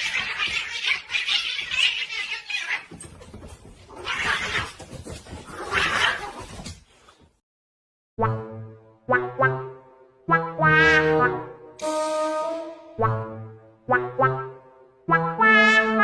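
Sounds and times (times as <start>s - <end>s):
cat crying harshly: 0.0s - 2.9s, 4.0s - 4.8s.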